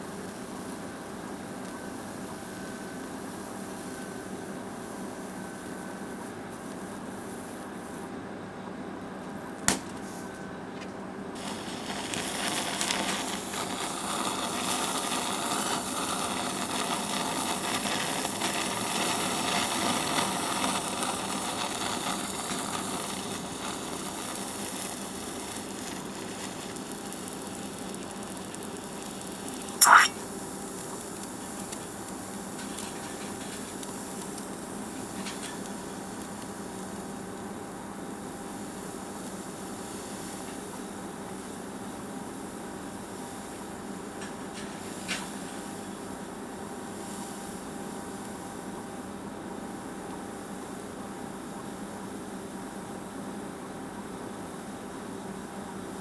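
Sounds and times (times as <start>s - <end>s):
sparkler sizzling and crackling: 0.0s - 7.9s, 11.4s - 56.0s
short sharp sound: 29.8s - 30.2s.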